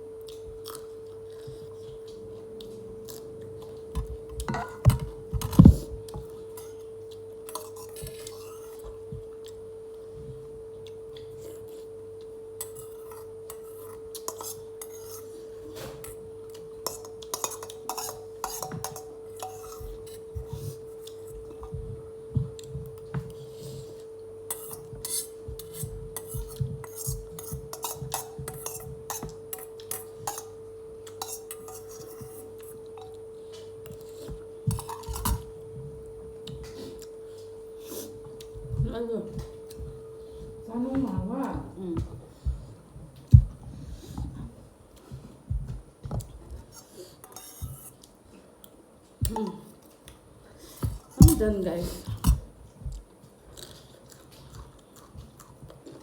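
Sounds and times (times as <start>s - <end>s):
steady hum: 0.0s - 48.1s
cutlery clinking on a dish: 4.4s - 5.8s, 16.8s - 20.2s.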